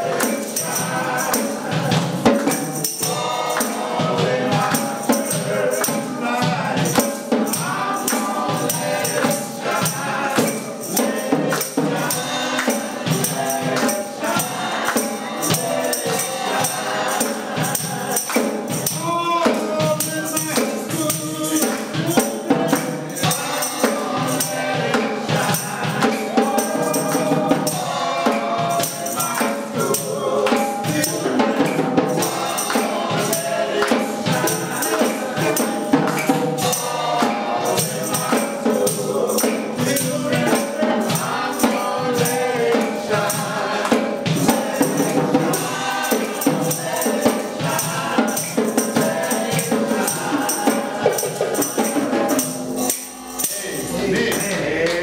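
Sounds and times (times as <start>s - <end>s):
congregation singing: 0.0s - 55.0s
tambourine shaken: 0.0s - 55.0s.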